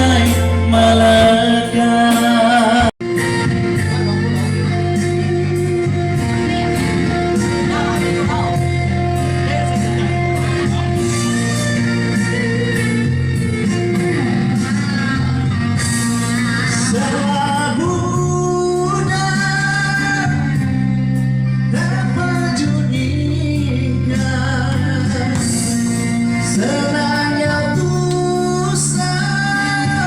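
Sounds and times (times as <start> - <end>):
live band music: 0.0 - 30.0.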